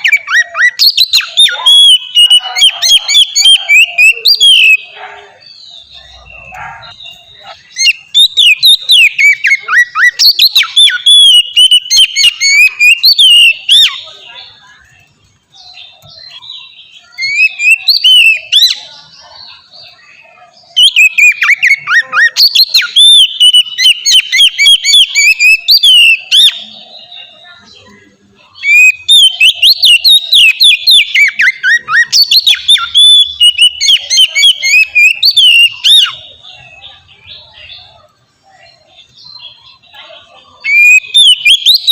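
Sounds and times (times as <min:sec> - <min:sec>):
bird singing whistled notes: 0:00.0 - 0:41.9.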